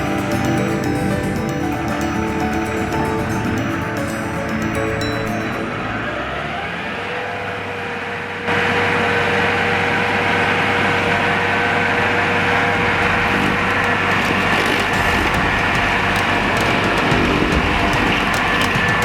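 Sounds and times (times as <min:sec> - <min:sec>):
stump grinder chewing wood: 0:13.0 - 0:19.0.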